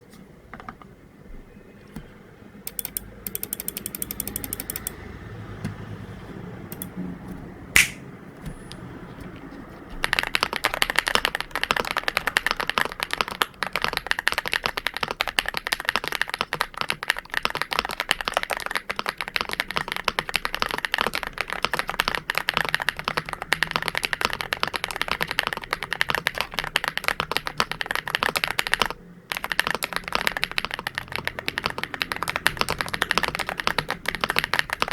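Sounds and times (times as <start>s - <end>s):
mechanical keyboard typing: 2.7s - 5.0s, 6.6s - 34.9s.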